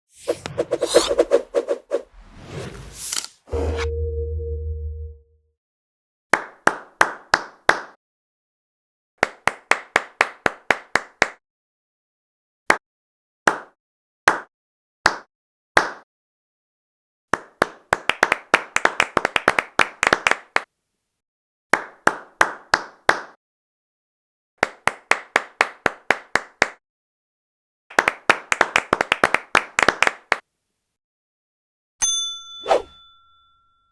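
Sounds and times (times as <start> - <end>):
person clapping: 6.4 - 8.0, 9.2 - 11.4, 17.4 - 20.7, 24.6 - 26.8, 27.9 - 30.4
short ringing ding: 32.0 - 33.9.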